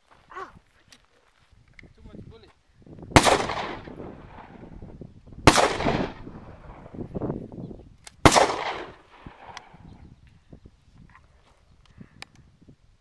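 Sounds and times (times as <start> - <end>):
gunshots with ringing tail: 3.2 - 4.7, 5.4 - 6.9, 8.2 - 9.8.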